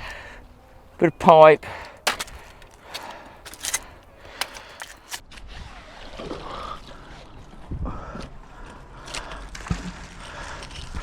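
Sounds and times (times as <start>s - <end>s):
metal scrap clicking and knocking: 2.0s - 5.2s.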